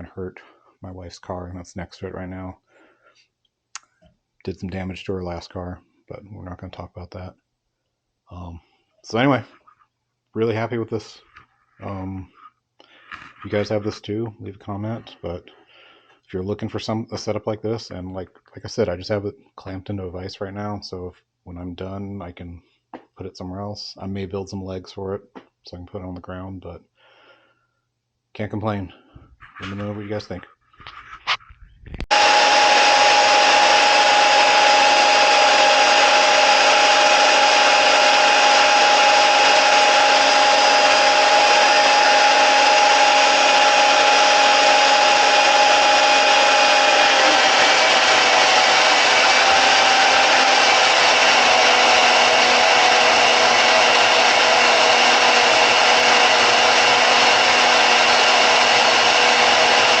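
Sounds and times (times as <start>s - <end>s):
band saw motor whine: 32.1s - 60.0s.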